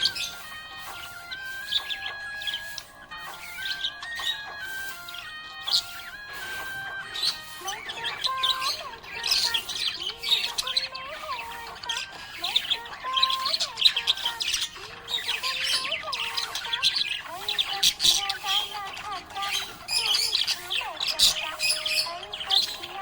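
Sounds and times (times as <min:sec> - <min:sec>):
simple tune of held notes: 0:00.0 - 0:13.4
budgerigar chattering: 0:00.0 - 0:23.0.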